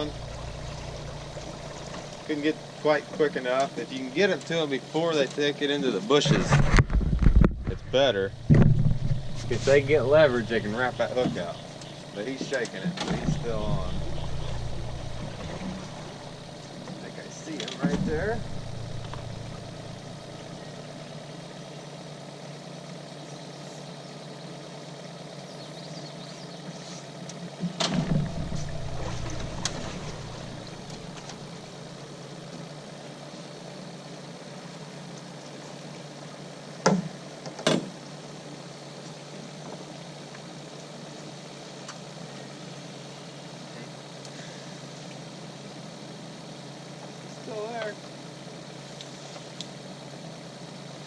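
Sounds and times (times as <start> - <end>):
boat motor running: 0.0 - 51.0
sharp knocks: 8.4 - 9.6, 27.8 - 31.4.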